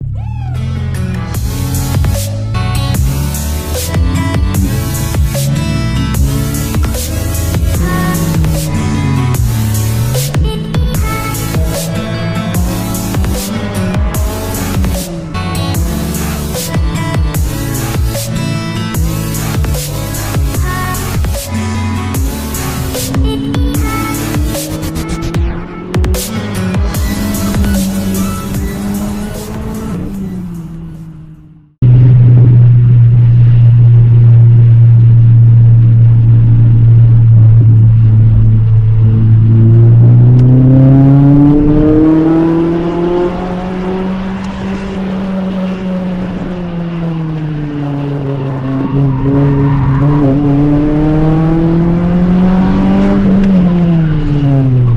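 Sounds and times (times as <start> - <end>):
electronic dance music: 1.3 - 30.6
car engine pulling under load: 1.4 - 54.9.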